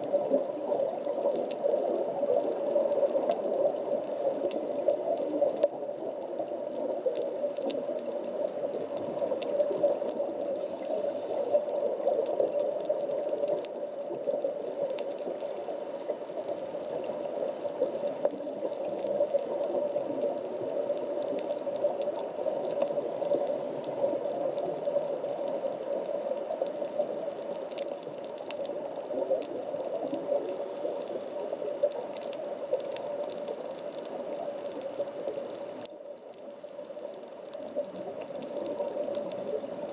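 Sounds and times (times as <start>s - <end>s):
faint underwater clicks: 0.0s - 39.9s
underwater rushing hiss: 9.2s - 12.6s, 21.8s - 24.8s.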